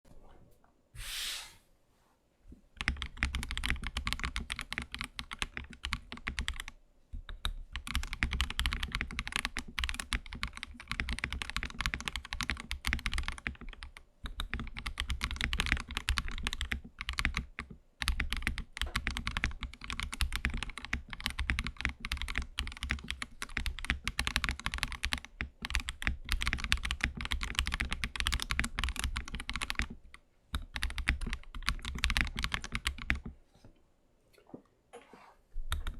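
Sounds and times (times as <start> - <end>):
fast typing on mechanical keyboard: 2.8 - 33.3, 35.7 - 35.9.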